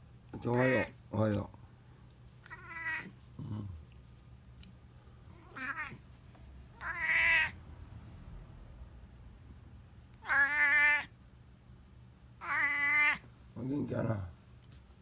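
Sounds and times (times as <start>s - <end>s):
cat meowing: 2.5s - 3.2s, 5.3s - 6.0s, 6.7s - 7.6s, 10.2s - 11.1s, 12.4s - 13.3s.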